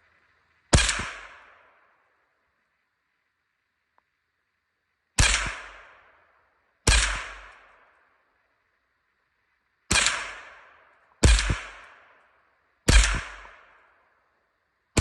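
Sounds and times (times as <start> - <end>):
rifle shots: 0.7 - 1.8, 5.2 - 6.1, 6.8 - 7.9, 9.9 - 12.2, 12.9 - 13.9.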